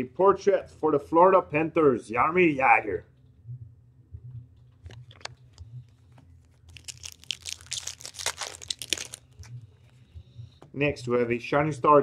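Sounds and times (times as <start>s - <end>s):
cards being handled: 4.9s - 9.6s
wrapper crinkling: 5.0s - 9.6s.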